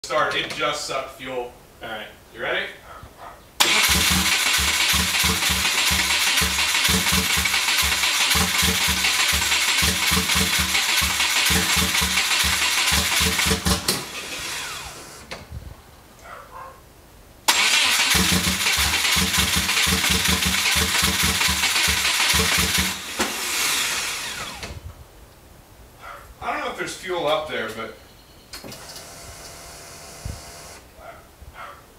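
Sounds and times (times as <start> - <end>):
car engine cranking: 3.6 - 15.3, 17.5 - 24.8.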